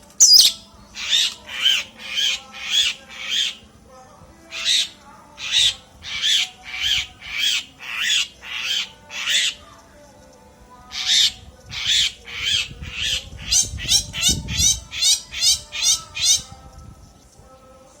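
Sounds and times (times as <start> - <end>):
bird warbling: 0.1 - 3.6, 4.5 - 9.6, 10.9 - 16.5
bird singing high notes: 0.2 - 3.6.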